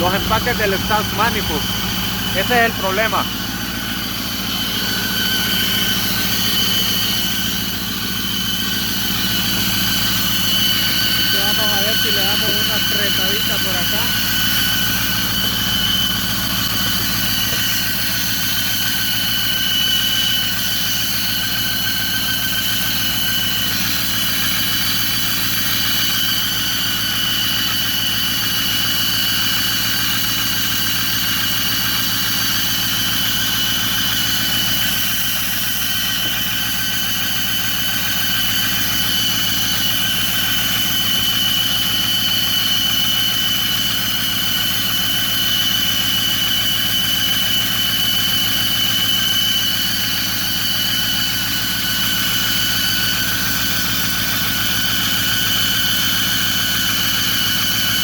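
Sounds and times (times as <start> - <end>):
high-pitched squeal: 0.0 - 20.3
diesel engine idling: 0.0 - 21.9.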